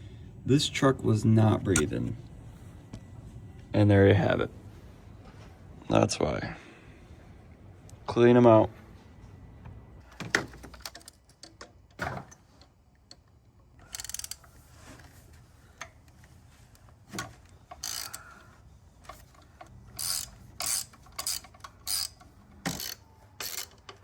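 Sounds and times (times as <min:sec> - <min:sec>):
hand ratchet clicking: 0:13.8 - 0:14.6, 0:17.6 - 0:18.4, 0:19.1 - 0:24.0.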